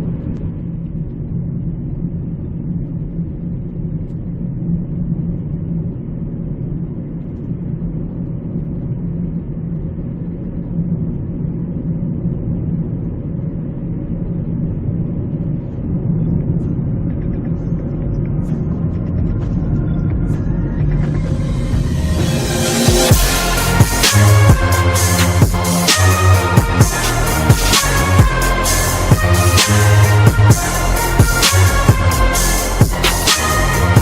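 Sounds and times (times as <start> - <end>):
car cabin engine and road rumble: 0.0 - 23.3.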